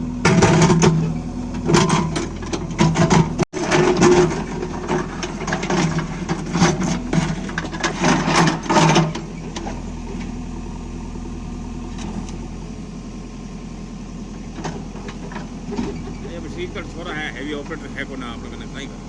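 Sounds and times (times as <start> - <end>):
diesel engine running: 0.0 - 19.0
clattering and scraping: 0.2 - 10.3, 14.5 - 16.4.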